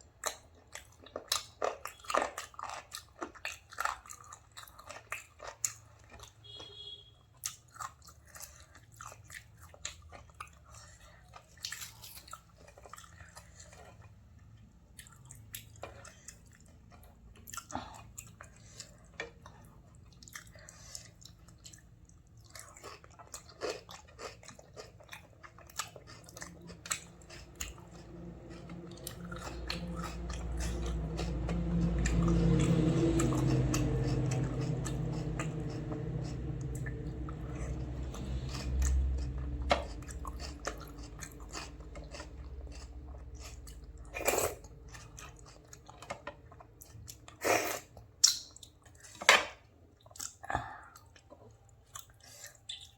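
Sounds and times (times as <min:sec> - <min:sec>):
chewing and mouth sounds: 0:00.0 - 0:52.9
low hum: 0:26.4 - 0:46.6.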